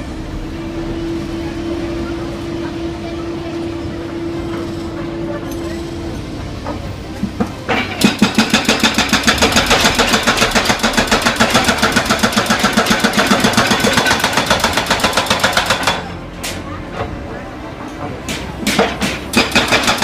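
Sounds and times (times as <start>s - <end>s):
excavator engine running: 0.0s - 20.0s
hydraulic hammer breaker pounding: 6.7s - 17.2s, 18.0s - 20.0s.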